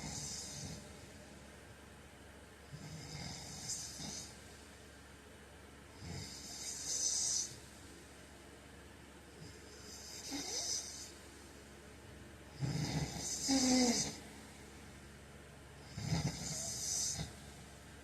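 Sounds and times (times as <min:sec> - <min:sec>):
man snoring with whistling tone: 0:06.1 - 0:07.5, 0:12.6 - 0:14.2, 0:15.9 - 0:17.3.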